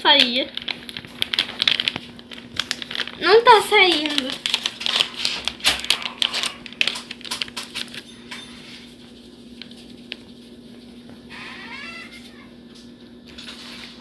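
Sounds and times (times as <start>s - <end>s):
shaker taps and rattles: 0.1s - 11.3s.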